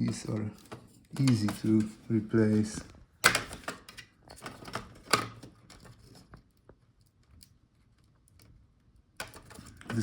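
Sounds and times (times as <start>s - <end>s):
small parts clicking and rustling: 2.7s - 10.0s.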